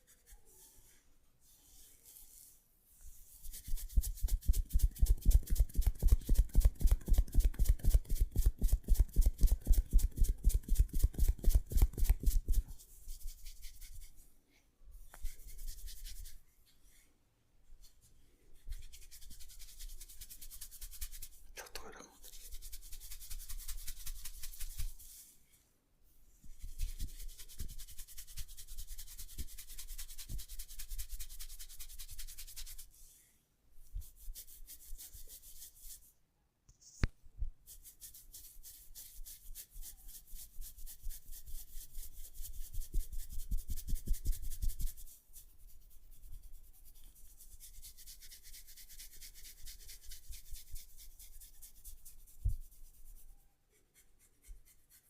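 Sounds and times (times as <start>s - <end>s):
fingers rubbing hair crackling: 3.4s - 14.1s.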